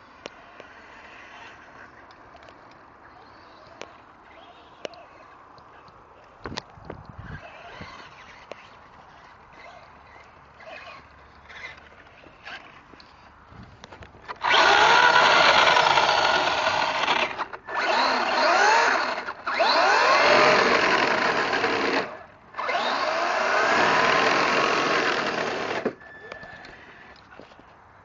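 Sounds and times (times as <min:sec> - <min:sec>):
toy truck electric motor whining: 0:07.2 - 0:13.3, 0:14.3 - 0:27.5.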